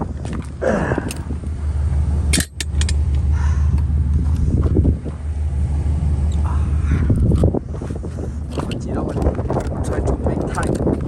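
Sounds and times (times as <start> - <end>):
car engine running: 0.0 - 11.0
metal tools clinking and rattling: 0.2 - 1.4, 2.3 - 3.2, 8.4 - 11.0.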